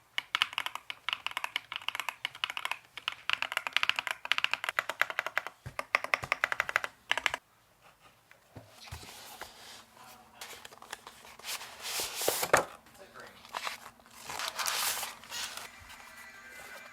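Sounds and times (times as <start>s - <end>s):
fast typing on mechanical keyboard: 0.2s - 7.4s.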